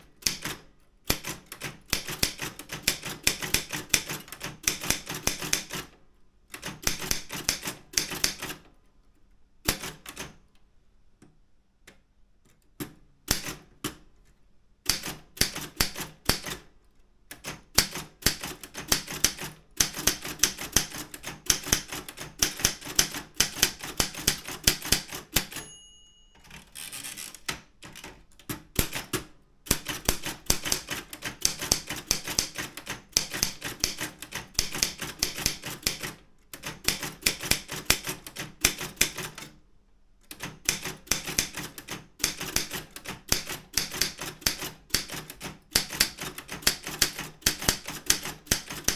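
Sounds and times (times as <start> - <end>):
typewriter key strikes: 0.2 - 5.9, 6.6 - 8.7, 12.8 - 14.0, 14.9 - 16.7, 17.4 - 39.5, 40.3 - 48.9
typewriter carriage return rattle: 17.6 - 39.6
typewriter margin bell: 24.8 - 27.5.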